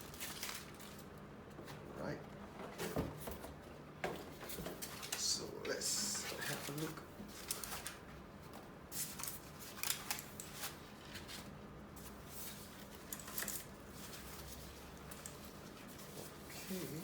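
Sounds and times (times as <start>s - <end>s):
packaging rustling: 0.0s - 1.2s, 9.0s - 16.4s.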